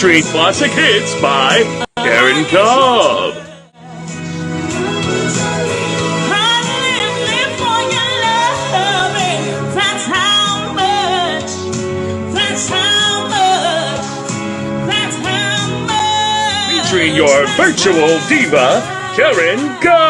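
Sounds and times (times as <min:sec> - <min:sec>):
instrumental backing music: 0:00.0 - 0:20.0
woman singing: 0:04.6 - 0:20.0.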